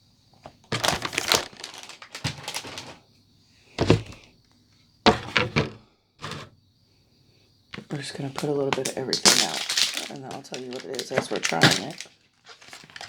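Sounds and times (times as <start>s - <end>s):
plastic packaging crinkling: 0.4s - 3.0s, 7.8s - 13.0s.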